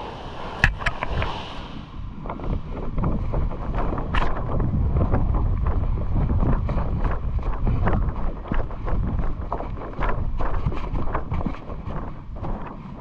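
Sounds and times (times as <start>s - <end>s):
wind buffeting microphone: 0.0s - 13.0s
clicks and rustles: 3.4s - 13.0s.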